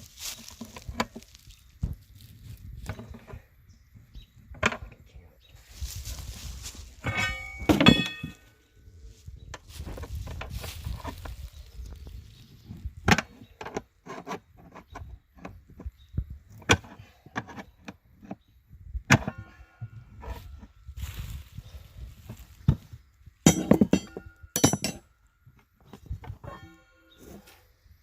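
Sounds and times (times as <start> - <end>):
metal tools clanking: 7.0 - 8.6, 23.4 - 25.1, 26.3 - 27.5.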